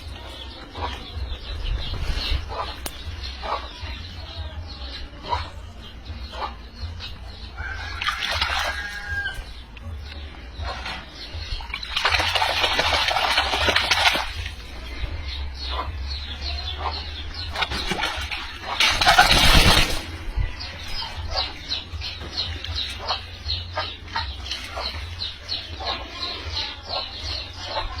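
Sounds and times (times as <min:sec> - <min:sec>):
chicks peeping: 0:00.0 - 0:28.0.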